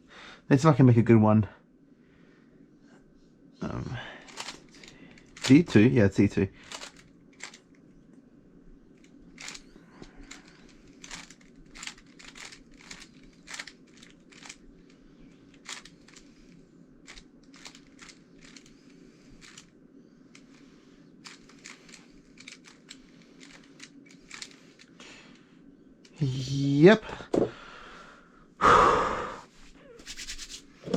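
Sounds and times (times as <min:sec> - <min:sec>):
faint steady hum: 0:00.0 - 0:30.9
puzzle cube layers clicking: 0:10.2 - 0:14.6.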